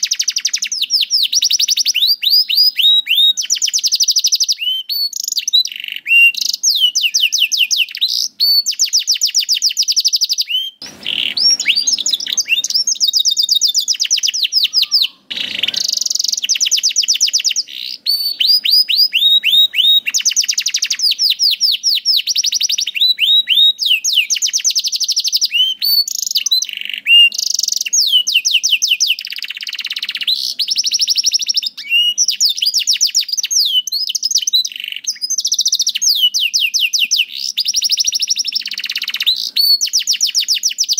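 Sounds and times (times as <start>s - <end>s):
canary singing trills: 0.0s - 40.9s
brief rushing noises: 10.8s - 13.1s.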